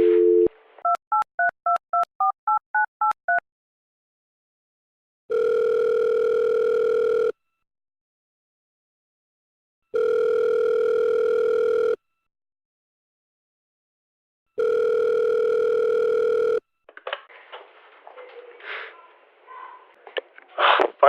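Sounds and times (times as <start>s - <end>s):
telephone ringback tone: 5.3s - 7.4s, 9.9s - 12.0s, 14.6s - 16.6s.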